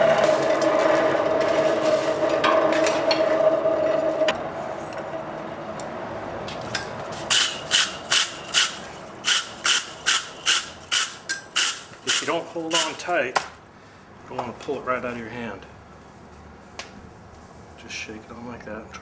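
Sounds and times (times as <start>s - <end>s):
forge blower humming: 0.0s - 13.1s
wire brush scrubbing metal: 7.1s - 13.2s.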